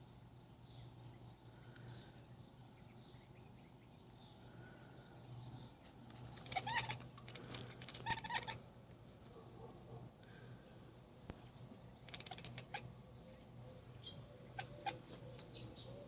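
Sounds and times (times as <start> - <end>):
cat chattering: 6.2 - 8.6, 11.9 - 13.0, 14.4 - 15.5.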